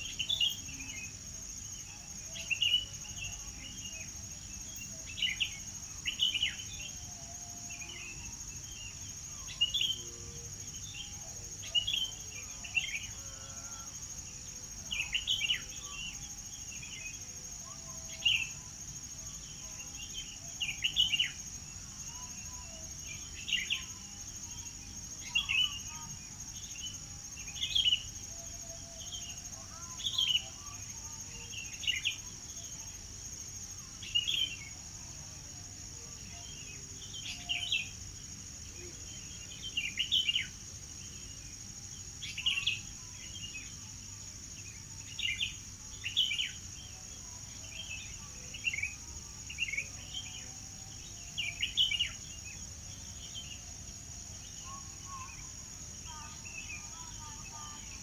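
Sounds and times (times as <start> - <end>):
high-pitched insect drone: 0.0 - 58.0
songbirds chirping: 0.0 - 58.0.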